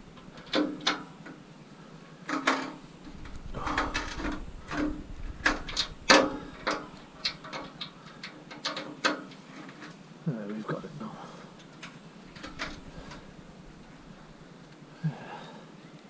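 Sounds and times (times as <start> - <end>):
metallic knocks and clanks: 0.2 - 1.3, 2.3 - 9.9, 11.8 - 13.2.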